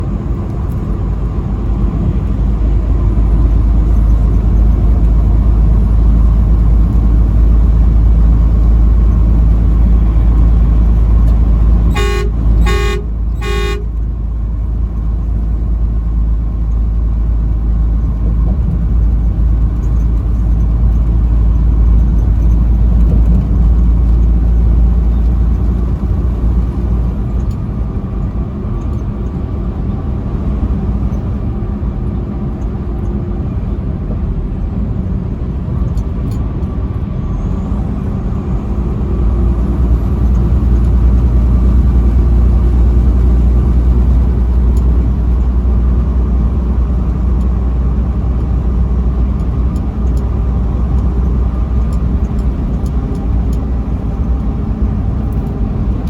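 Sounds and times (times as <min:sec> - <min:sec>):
truck engine and road rumble: 0:00.0 - 0:56.0
truck horn blasts: 0:11.8 - 0:14.1.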